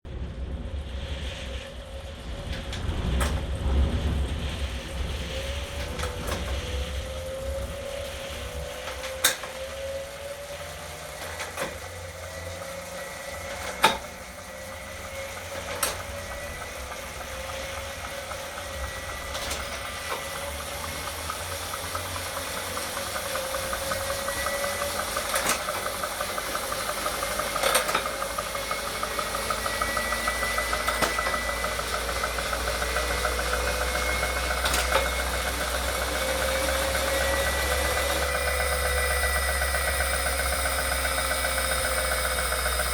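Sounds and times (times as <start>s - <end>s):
bike trainer whine: 0.1s - 42.9s.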